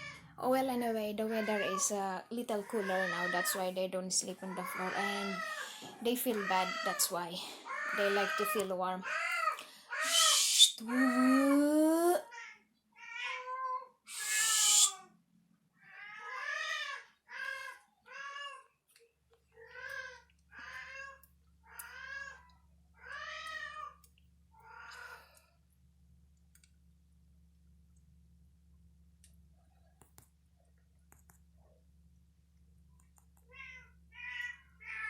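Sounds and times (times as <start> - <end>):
cat meowing: 9.0 - 11.4, 12.3 - 15.0.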